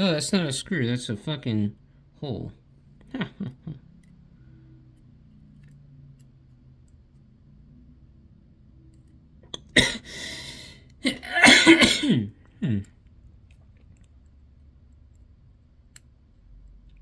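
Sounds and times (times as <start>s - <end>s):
man coughing: 9.6s - 12.9s.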